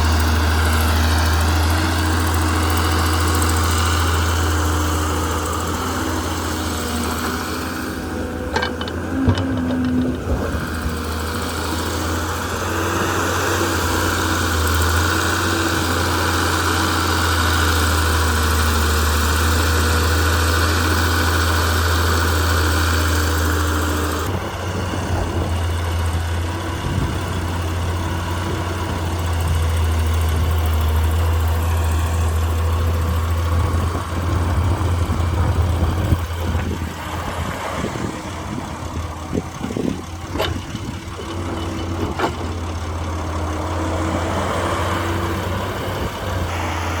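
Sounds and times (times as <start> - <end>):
diesel engine humming: 0.0 - 47.0
knocks and rattles: 8.4 - 11.0, 39.4 - 43.8.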